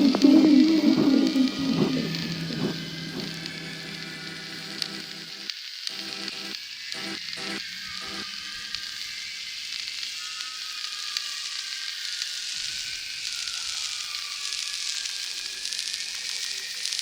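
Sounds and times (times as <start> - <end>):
faint high tone: 0.0 - 5.3
low pulsing chord: 0.0 - 5.4
crackling sizzling hiss: 0.0 - 17.0.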